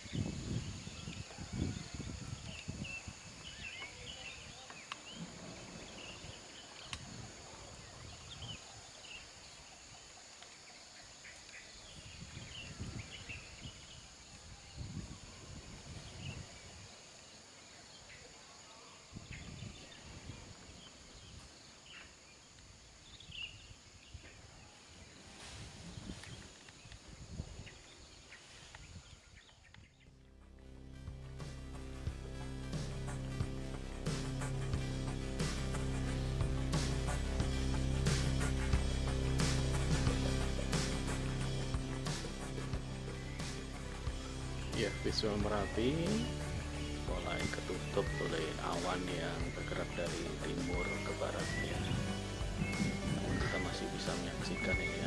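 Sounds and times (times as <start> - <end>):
small birds chirping: 0.0 - 24.8, 25.9 - 55.0
low rumbling: 30.1 - 55.0
steady high hiss: 30.2 - 55.0.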